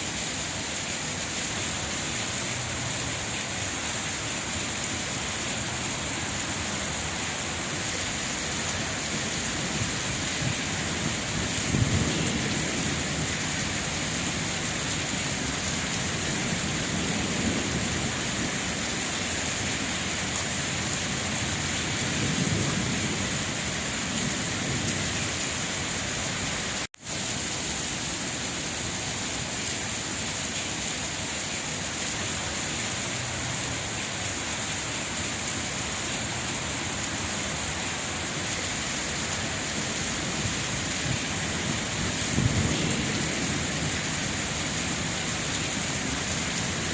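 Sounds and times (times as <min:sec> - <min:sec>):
steady rain: 0:00.0 - 0:46.9.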